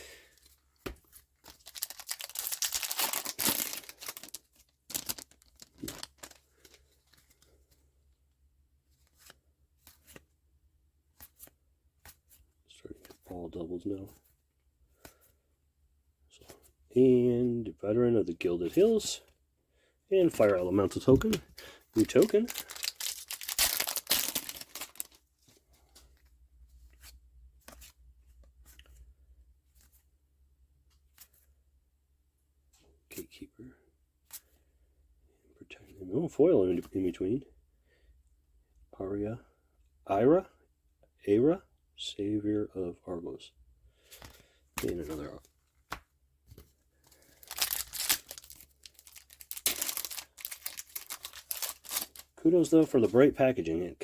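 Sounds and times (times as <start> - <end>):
foil wrapper tearing and crinkling: 1.6 - 6.4, 22.0 - 25.2, 47.4 - 52.3.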